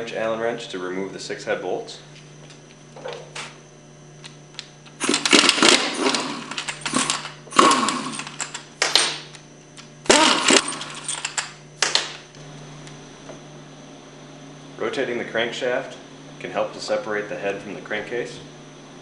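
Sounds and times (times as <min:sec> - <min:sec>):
power driver motor whirring: 0:04.9 - 0:08.8.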